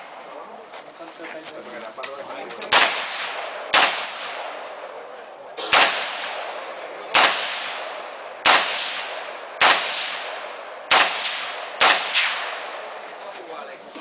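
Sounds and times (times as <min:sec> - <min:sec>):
gunshots with ringing echo: 0:02.7 - 0:13.2.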